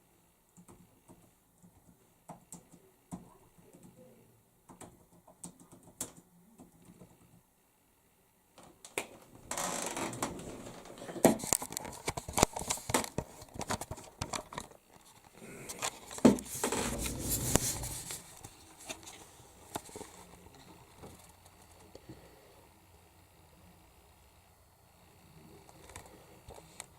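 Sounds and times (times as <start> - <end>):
clicks and rustling handling noise: 10.0 - 22.0.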